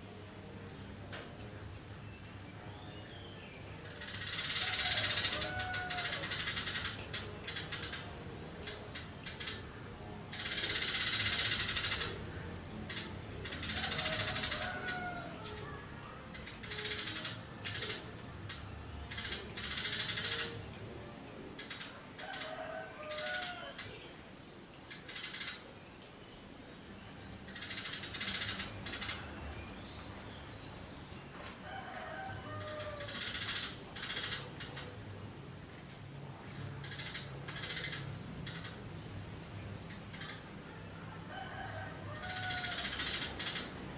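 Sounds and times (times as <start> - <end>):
sparrow rattling chatter: 3.8 - 20.8, 21.6 - 24.2, 24.8 - 25.8, 27.4 - 29.4, 32.4 - 35.2, 36.5 - 40.7, 41.6 - 43.9.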